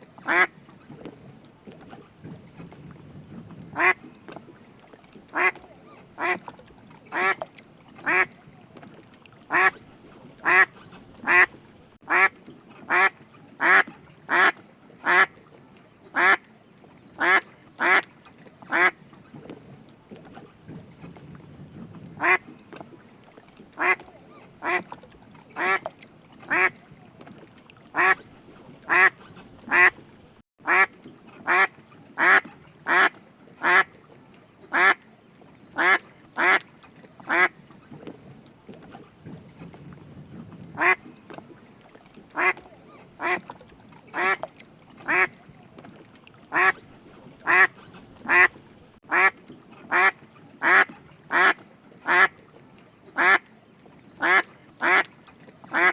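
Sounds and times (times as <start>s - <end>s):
duck quacking: 0.3s - 0.5s, 3.8s - 4.0s, 5.3s - 5.6s, 6.2s - 6.4s, 9.5s - 9.8s, 10.4s - 12.3s, 12.9s - 15.3s, 17.2s - 18.0s, 18.7s - 18.9s, 22.2s - 22.4s, 23.8s - 24.0s, 24.6s - 24.8s, 25.6s - 25.8s, 28.0s - 28.2s, 28.9s - 30.0s, 30.6s - 30.9s, 31.5s - 33.9s, 35.8s - 36.6s, 40.8s - 41.0s, 42.4s - 42.6s, 43.2s - 43.4s, 45.1s - 45.3s, 46.5s - 46.8s, 47.4s - 49.3s, 49.9s - 52.3s, 54.2s - 55.1s.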